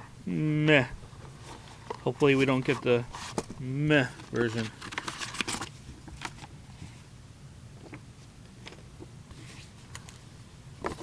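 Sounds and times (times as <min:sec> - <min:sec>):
low room hum: 0:00.0 - 0:11.0
cardboard box ticks and rustles: 0:04.1 - 0:06.5.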